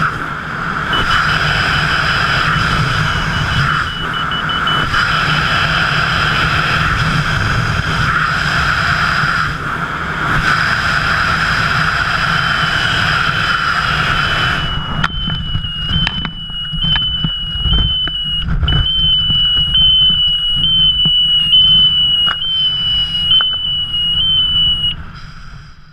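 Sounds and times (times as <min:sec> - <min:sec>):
low buffeting rumble: 0:00.0 - 0:25.9
thin high whistle: 0:02.5 - 0:05.0, 0:14.2 - 0:25.9.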